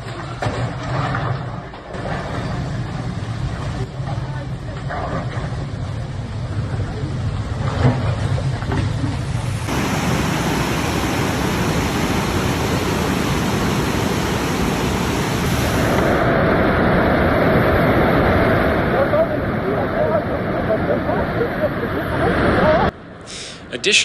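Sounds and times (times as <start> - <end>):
rushing floodwater: 8.8 - 22.9.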